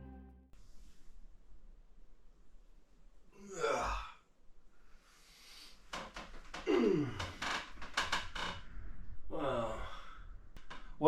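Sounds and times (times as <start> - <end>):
man groaning: 3.4 - 4.1, 6.7 - 7.3, 9.3 - 10.1
man sighing: 6.6 - 7.6, 9.3 - 10.2.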